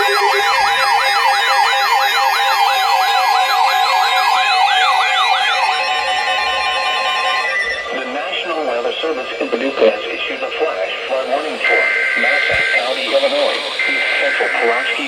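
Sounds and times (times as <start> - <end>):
steady alert tone: 0.0 - 2.0
electronic siren sweeping: 0.0 - 15.0.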